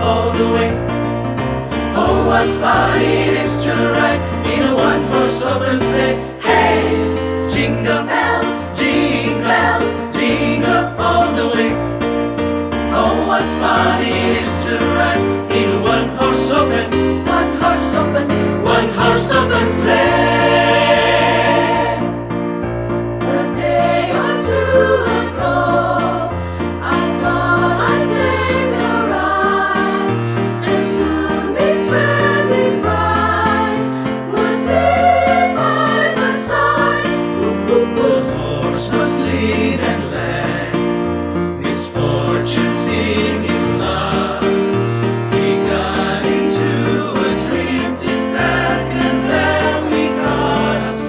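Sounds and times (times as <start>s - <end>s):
vocal group singing in harmony: 0.0s - 12.2s, 12.8s - 22.5s, 23.2s - 51.0s.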